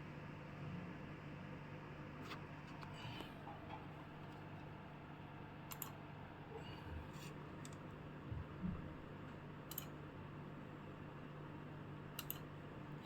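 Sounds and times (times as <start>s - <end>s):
steady low hum: 0.0s - 13.0s
light clicks of small tools: 5.7s - 6.0s, 7.2s - 7.9s, 9.7s - 10.0s, 12.2s - 12.5s.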